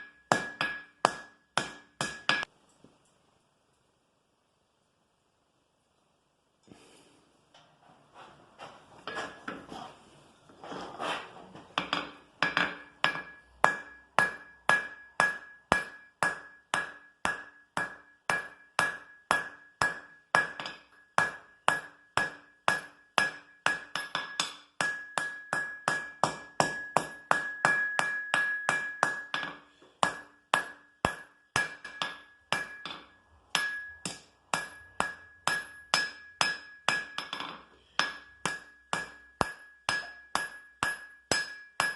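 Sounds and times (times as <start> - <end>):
anvil ringing: 0.0 - 2.5, 12.4 - 41.9
hammer striking iron on anvil: 0.0 - 2.5, 11.8 - 41.9.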